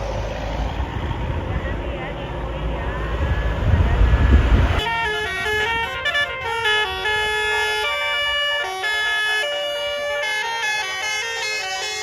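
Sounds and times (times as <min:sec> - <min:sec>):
bus horn playing a melody: 0:04.8 - 0:12.0.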